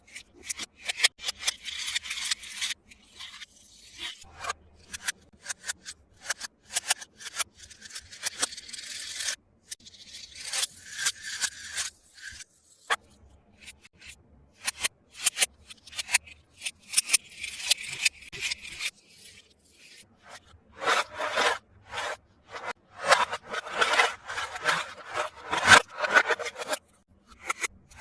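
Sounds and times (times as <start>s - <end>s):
packaging rustling and scraping: 20.1s - 27.0s.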